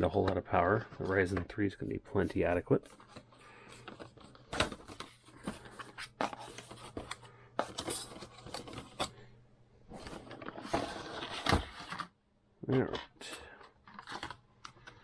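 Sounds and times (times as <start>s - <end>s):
packaging clicks and scrapes: 2.9s - 9.3s, 9.9s - 12.2s, 13.2s - 15.0s.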